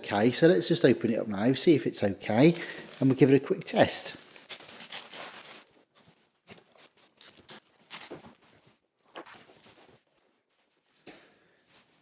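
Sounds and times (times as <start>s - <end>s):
cardboard rustling and scraping: 4.3s - 11.0s.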